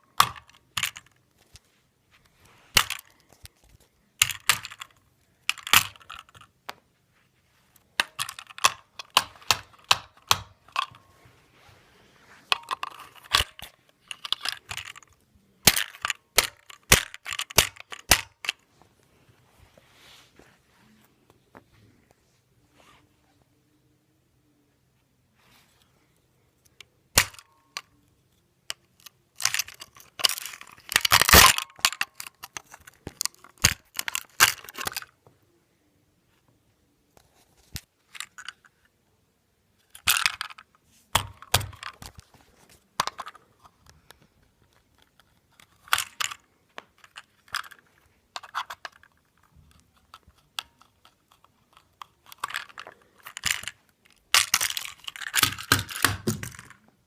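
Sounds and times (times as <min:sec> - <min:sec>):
plastic parts cracking and snapping: 0:02.7 - 0:06.8, 0:12.5 - 0:18.6, 0:27.1 - 0:27.9, 0:28.7 - 0:35.1, 0:43.0 - 0:56.8.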